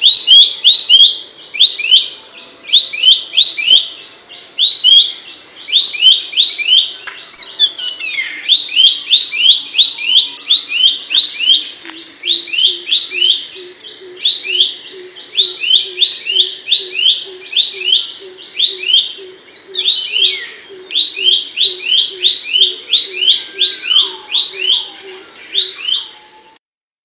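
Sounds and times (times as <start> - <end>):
bird singing high paired notes: 14.3 - 26.6.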